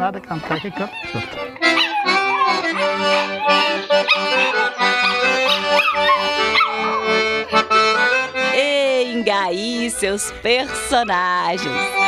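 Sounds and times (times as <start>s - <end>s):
dog howling: 0.4s - 7.8s
accordion playing chords: 1.1s - 12.0s.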